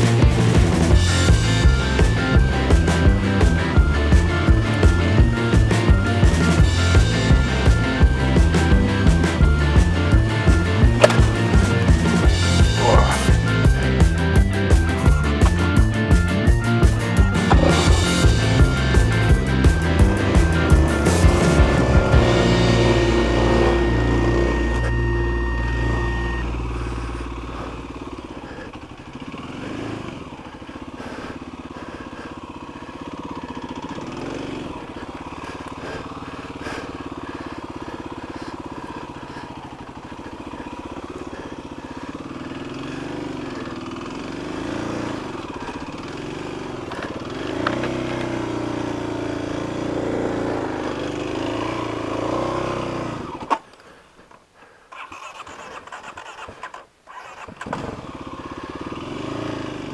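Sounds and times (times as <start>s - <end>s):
music: 0.0s - 27.7s
motorcycle engine revving: 0.0s - 54.0s, 54.9s - 59.9s.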